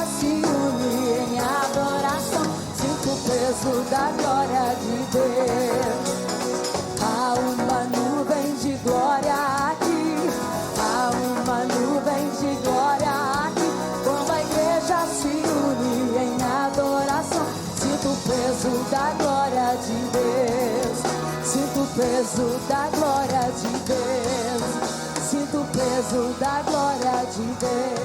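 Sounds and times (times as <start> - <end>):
full band playing: 0.0 - 28.0
woman singing wordless runs: 7.0 - 28.0.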